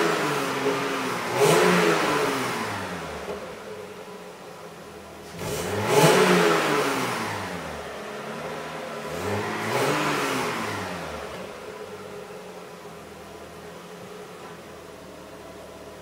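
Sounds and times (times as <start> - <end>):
car engine revving: 0.0 - 14.3.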